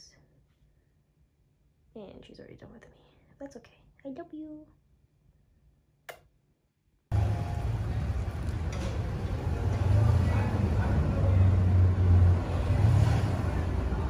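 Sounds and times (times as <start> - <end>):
vehicle rumbling in motion: 7.1 - 14.0.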